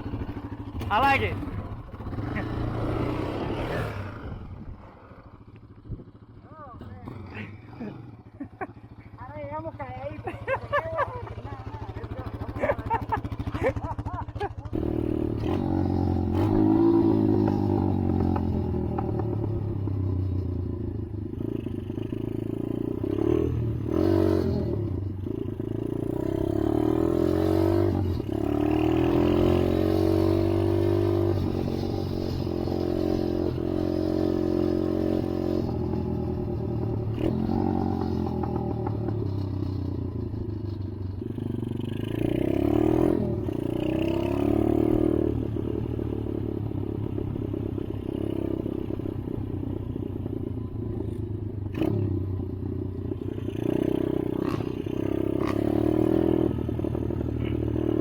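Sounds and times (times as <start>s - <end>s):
quad engine running: 0.0s - 58.0s.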